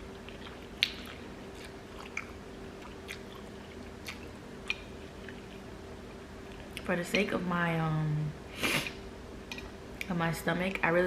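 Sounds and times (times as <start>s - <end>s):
person chewing noodles: 0.1s - 5.7s
sharp wet mouth smacks: 0.8s - 1.2s.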